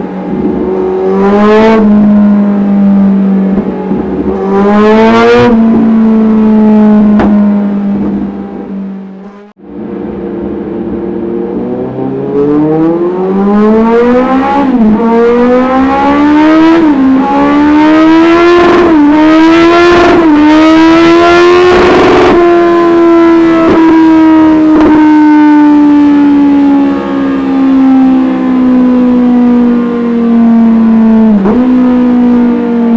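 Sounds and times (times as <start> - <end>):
loud motorcycle engine revving: 0.0 - 9.6, 11.2 - 32.9.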